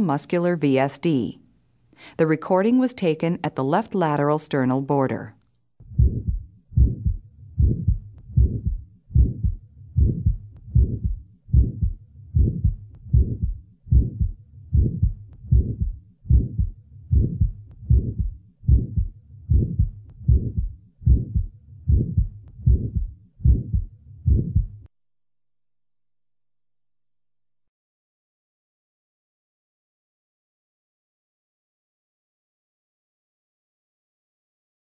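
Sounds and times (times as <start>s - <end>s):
heartbeat with murmur: 5.8s - 24.9s.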